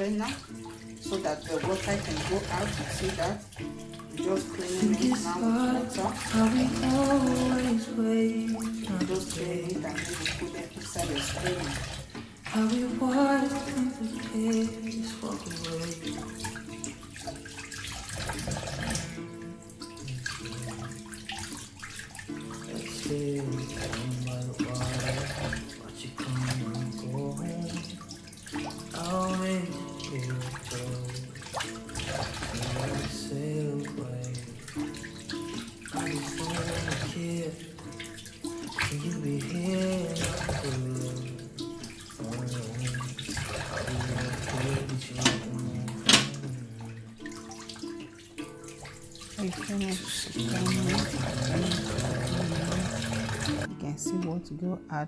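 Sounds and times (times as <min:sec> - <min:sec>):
hands splashing water: 0:00.0 - 0:53.7
tap water running into sink: 0:00.0 - 0:54.2
background music: 0:00.0 - 0:55.0
song with held sung notes: 0:04.2 - 0:11.8, 0:12.5 - 0:16.8, 0:22.7 - 0:28.3, 0:36.0 - 0:47.3.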